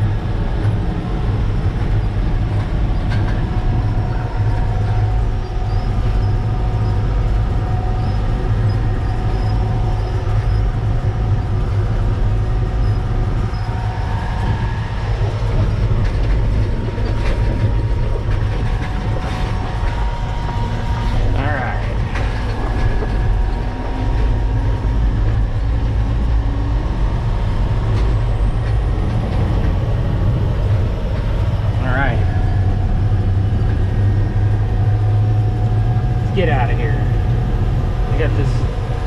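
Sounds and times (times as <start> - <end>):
truck diesel engine rumble: 0.0 - 39.0.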